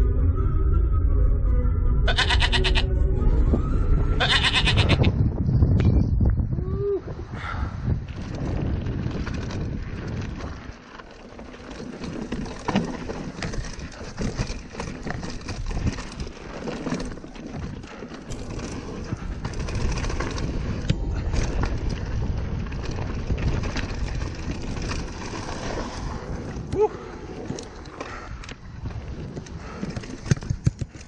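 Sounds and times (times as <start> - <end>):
tyre and wind noise: 2.1 - 31.0
bike rattles and knocks: 8.1 - 31.0.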